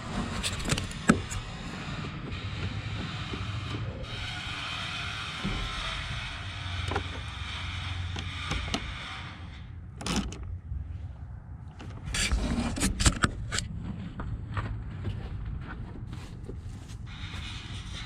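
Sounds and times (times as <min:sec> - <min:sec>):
low hum: 0:00.0 - 0:18.0.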